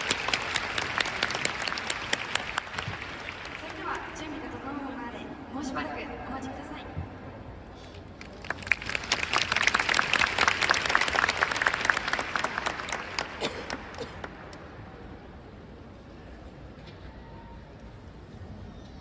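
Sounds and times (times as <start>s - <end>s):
audience applauding: 0.0s - 4.6s, 8.2s - 14.6s.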